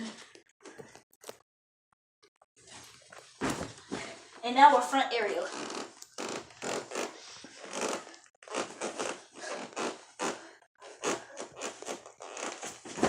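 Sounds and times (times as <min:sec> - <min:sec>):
feet and hands scuffing floor: 0:02.6 - 0:04.4.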